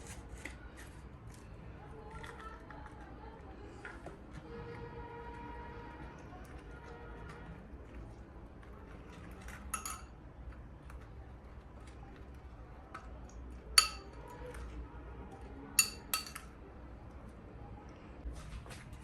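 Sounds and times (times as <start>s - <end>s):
low background noise: 0.0s - 19.0s
metal utensils clinking on dishes: 9.4s - 10.2s, 13.7s - 14.3s, 15.8s - 16.6s.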